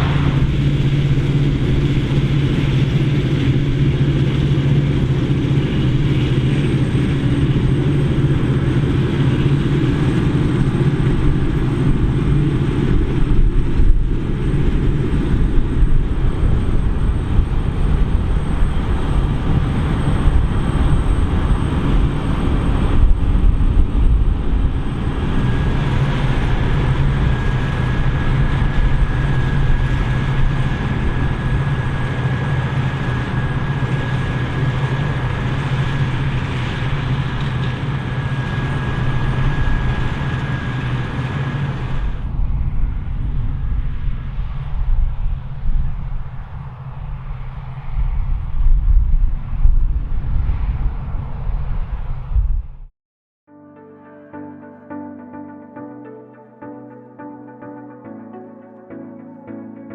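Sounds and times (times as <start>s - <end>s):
combine harvester engine hum: 0.0s - 44.8s.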